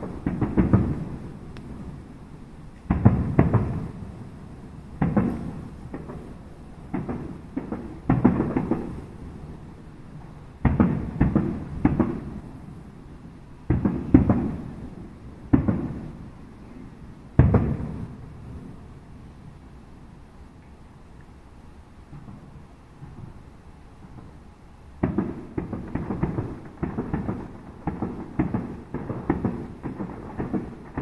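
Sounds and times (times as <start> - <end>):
firework shells booming: 0.0 - 2.0, 2.8 - 9.8, 10.6 - 12.6, 13.6 - 16.3, 17.4 - 18.8, 22.1 - 31.0.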